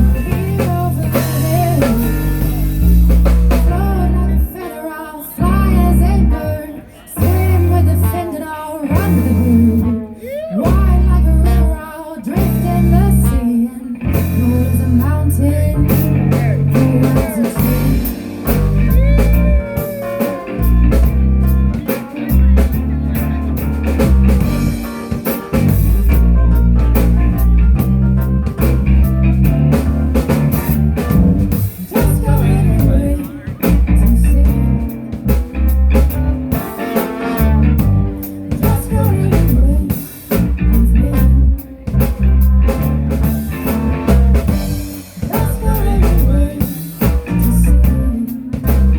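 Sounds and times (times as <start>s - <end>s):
person singing: 0.0s - 23.1s, 31.7s - 48.9s
live band playing: 0.0s - 48.9s.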